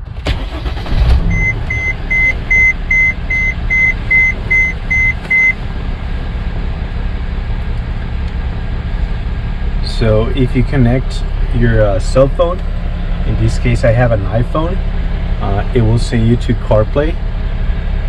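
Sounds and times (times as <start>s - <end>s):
engine idling: 0.0s - 18.0s
rapid electronic warning beeps: 1.3s - 5.6s.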